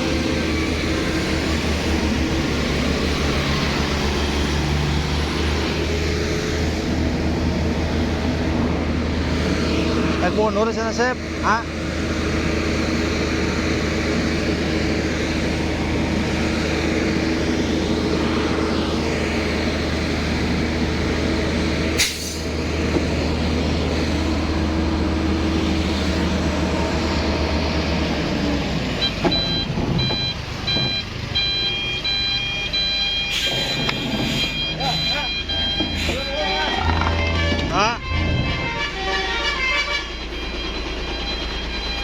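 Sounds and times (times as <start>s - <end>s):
heavy vehicle engine drone: 0.0s - 42.0s
reversing alarm beeps: 29.0s - 38.4s, 40.1s - 42.0s.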